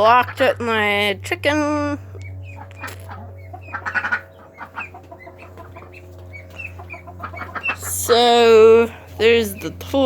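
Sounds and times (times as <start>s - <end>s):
steady low hum: 0.0s - 10.0s
chickens clucking: 2.1s - 10.0s.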